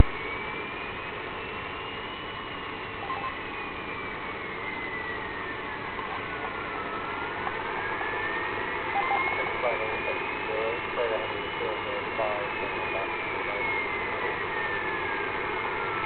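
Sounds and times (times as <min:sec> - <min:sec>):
wavering whistle tone: 0:00.0 - 0:16.0
radio static hiss: 0:05.5 - 0:16.0.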